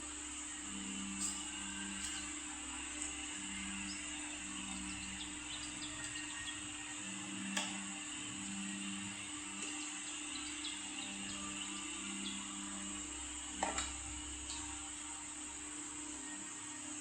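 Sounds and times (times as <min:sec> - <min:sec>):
small birds chirping: 0:09.6 - 0:12.8.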